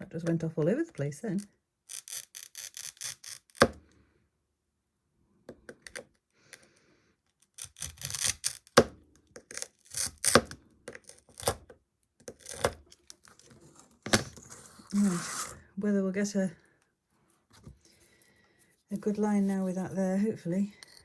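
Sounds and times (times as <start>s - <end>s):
glass cutting clicks and scrapes: 1.9s - 3.6s, 7.6s - 8.8s, 12.2s - 13.5s.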